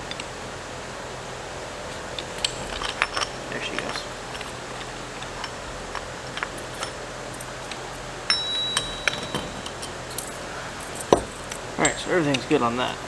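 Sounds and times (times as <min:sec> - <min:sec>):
metal parts clicking and clinking: 0:01.9 - 0:12.9
metal strike ringing: 0:08.3 - 0:09.8.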